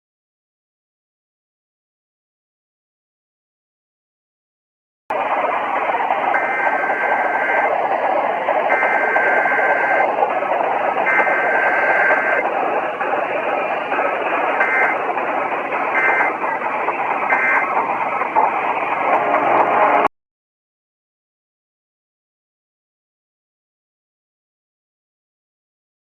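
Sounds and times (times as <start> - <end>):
radio static hiss: 5.1 - 20.1
warbling two-tone data bursts: 5.7 - 20.1.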